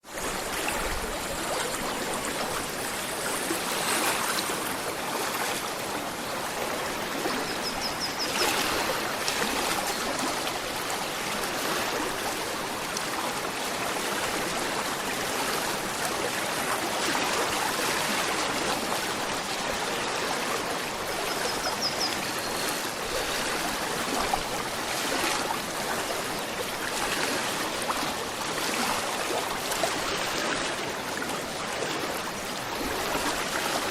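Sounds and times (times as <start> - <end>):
river flowing: 0.0 - 33.9.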